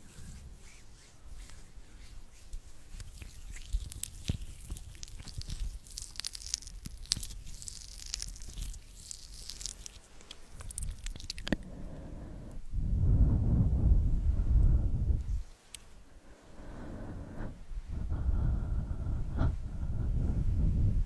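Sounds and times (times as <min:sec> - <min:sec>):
soft hissing: 0:00.0 - 0:12.7
wet mouth clicks: 0:03.0 - 0:11.7.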